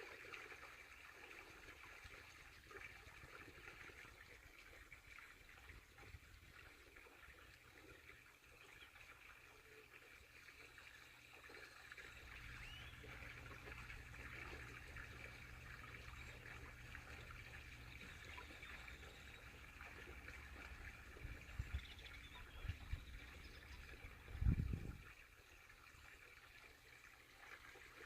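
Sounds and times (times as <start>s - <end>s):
faint trickling water: 0.0s - 28.0s.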